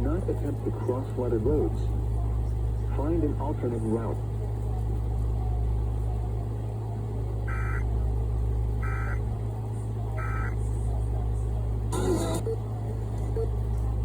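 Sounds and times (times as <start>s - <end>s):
low hum: 7.3s - 14.0s
two-tone data warble: 7.5s - 7.8s, 8.8s - 9.2s, 10.2s - 10.6s, 11.9s - 12.6s.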